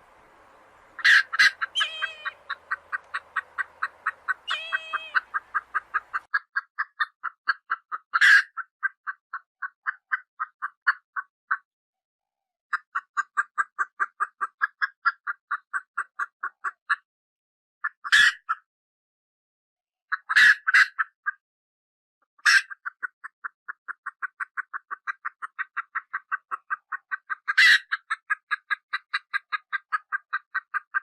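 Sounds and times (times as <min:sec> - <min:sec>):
baby chicks peeping: 0:00.0 - 0:06.3
harsh chick call: 0:00.0 - 0:06.3.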